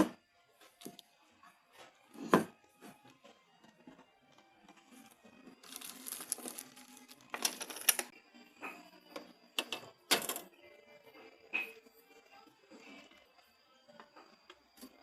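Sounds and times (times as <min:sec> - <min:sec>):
faint background music: 0:00.0 - 0:15.0
packaging rustling: 0:05.6 - 0:08.1.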